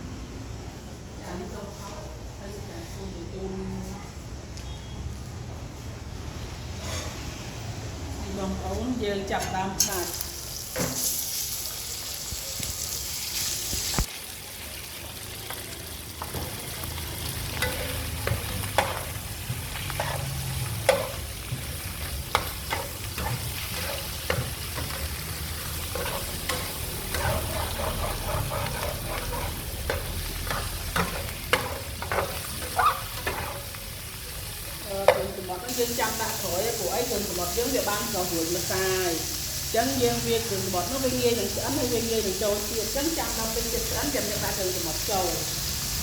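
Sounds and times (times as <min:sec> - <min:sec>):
food sizzling in a hot pan: 0:09.8 - 0:46.0
utensil scraping and clinking pan: 0:25.8 - 0:33.6.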